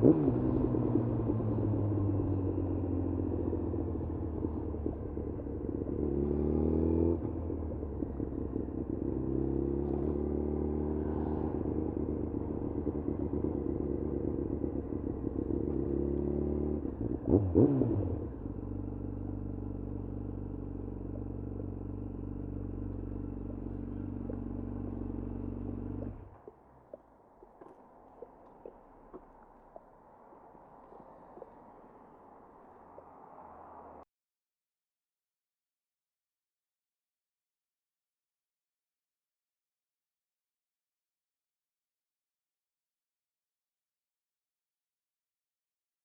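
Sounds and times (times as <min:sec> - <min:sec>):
motorcycle engine revving: 0:00.0 - 0:27.0.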